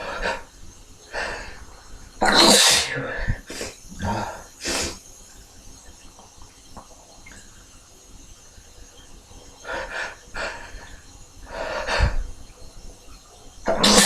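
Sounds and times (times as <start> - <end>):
burst of breath: 9.6 - 12.3.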